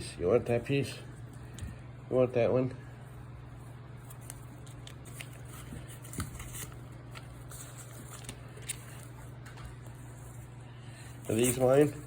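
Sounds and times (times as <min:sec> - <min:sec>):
steady low hum: 0:00.0 - 0:12.0
paper rustling and crinkling: 0:03.6 - 0:12.0.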